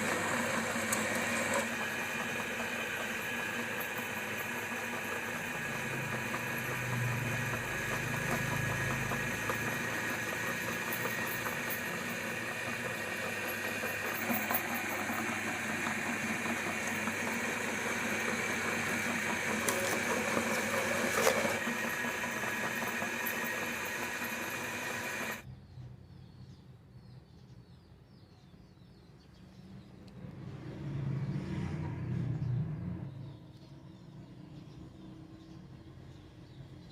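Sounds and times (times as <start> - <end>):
meat grinder motor whining: 0.0 - 25.5.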